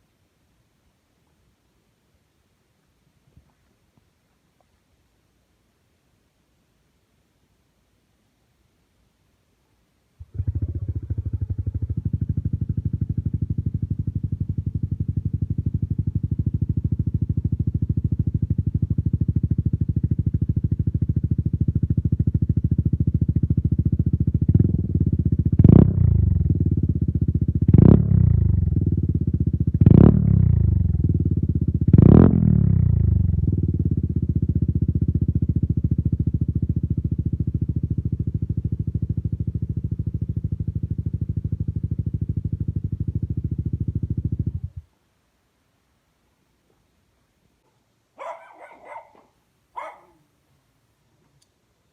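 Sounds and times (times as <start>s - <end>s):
scooter engine revving: 10.2s - 26.9s
scooter engine idling: 10.2s - 29.8s, 32.5s - 44.8s.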